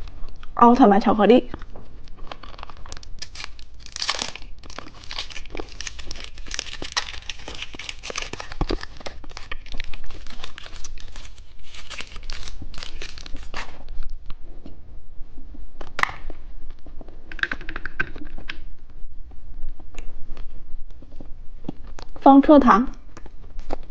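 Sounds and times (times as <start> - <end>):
plastic wrapper crinkling: 1.4 - 14.2.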